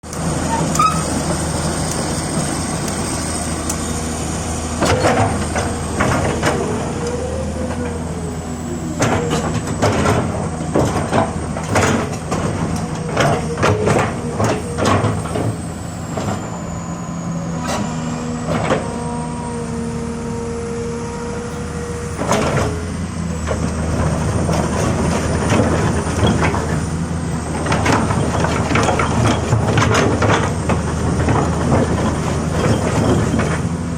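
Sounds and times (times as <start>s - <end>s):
diesel engine hum: 0.0s - 33.9s
hydraulic whine: 0.1s - 33.9s.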